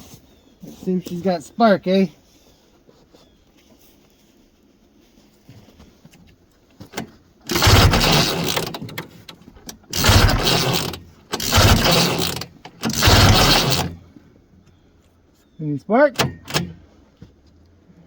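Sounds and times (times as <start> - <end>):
pull-starter cranking engine: 6.9 - 14.1, 16.2 - 16.8.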